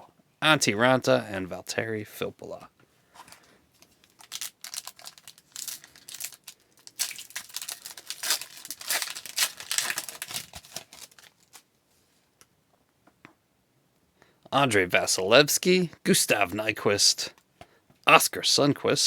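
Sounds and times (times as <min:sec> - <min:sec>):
foil wrapper tearing and crinkling: 0:03.3 - 0:11.6.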